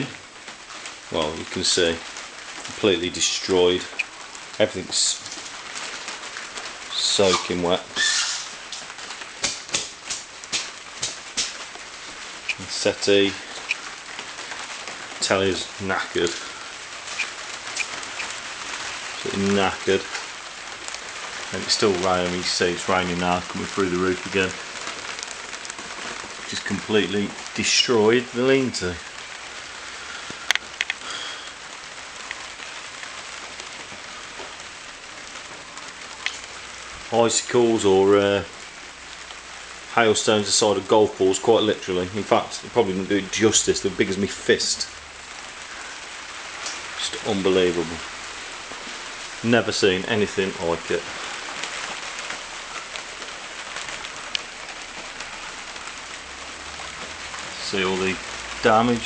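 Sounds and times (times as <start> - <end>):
rain on a roof: 0.0 - 59.0
drops ticking: 1.2 - 29.2, 29.8 - 31.6, 36.1 - 36.6.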